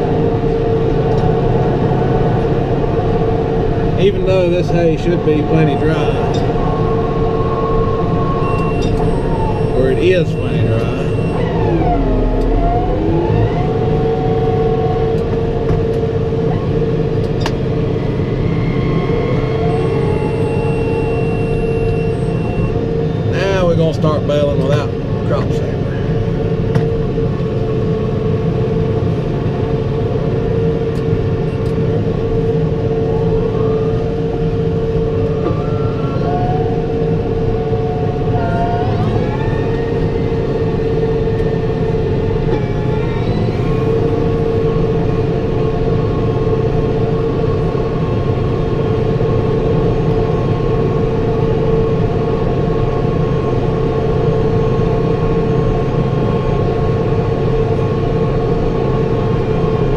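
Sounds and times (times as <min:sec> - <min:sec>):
steady baler hum: 0:00.0 - 0:35.5, 0:36.7 - 0:59.9
tractor diesel engine running: 0:00.0 - 0:59.9
higher rising tones: 0:00.9 - 0:15.1.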